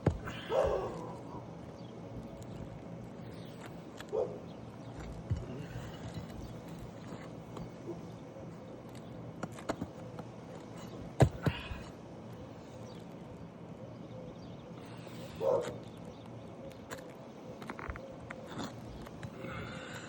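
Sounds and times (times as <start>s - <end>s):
footsteps on shingle roof: 0.0s - 7.8s, 8.8s - 11.9s.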